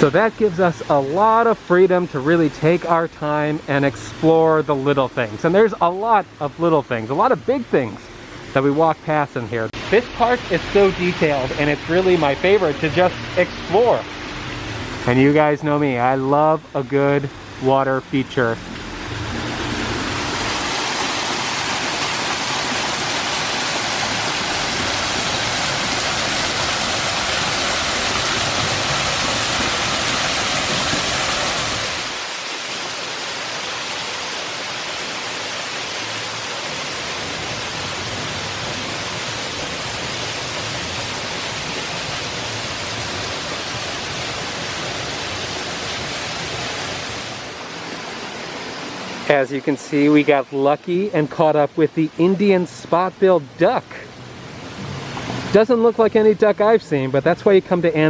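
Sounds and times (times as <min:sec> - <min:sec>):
water running and splashing: 0:00.0 - 0:08.0, 0:17.8 - 0:52.6.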